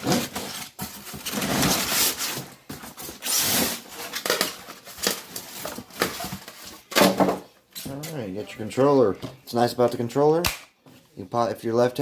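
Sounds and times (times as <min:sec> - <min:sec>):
cardboard and plastic rustling: 0:00.0 - 0:08.4.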